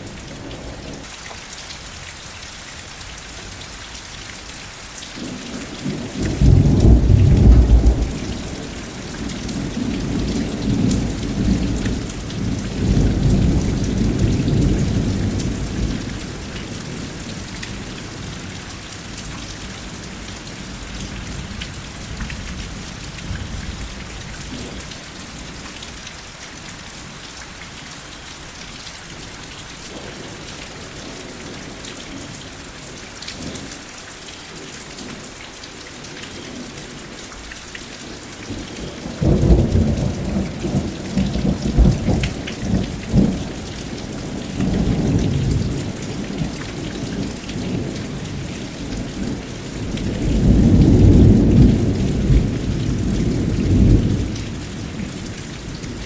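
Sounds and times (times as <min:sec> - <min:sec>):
steady rain falling: 0:00.0 - 0:56.0
thunder cracking and rumbling: 0:05.8 - 0:17.0, 0:39.2 - 0:46.5, 0:47.1 - 0:55.1.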